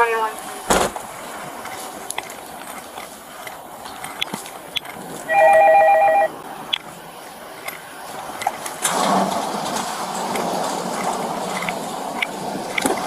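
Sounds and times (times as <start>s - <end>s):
electronic telephone ringing: 5.3s - 6.3s.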